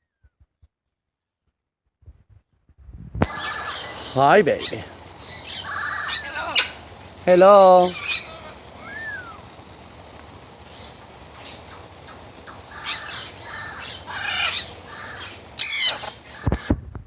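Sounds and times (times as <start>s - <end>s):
bird squawking: 3.3s - 9.9s, 10.6s - 16.7s.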